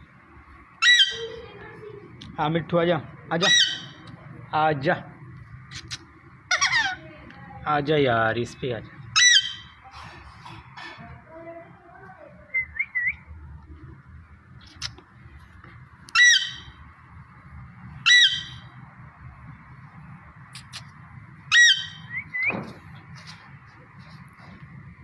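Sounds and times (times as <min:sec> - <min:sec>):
parrot squawking: 0:00.8 - 0:01.4, 0:03.3 - 0:04.1, 0:05.7 - 0:07.1, 0:09.1 - 0:09.8, 0:16.1 - 0:16.8, 0:18.0 - 0:18.8, 0:21.5 - 0:22.4.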